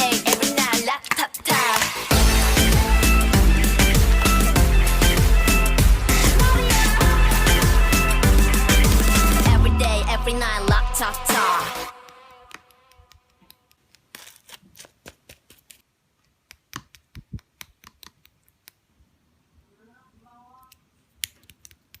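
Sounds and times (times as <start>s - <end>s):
background song: 0.0s - 13.2s.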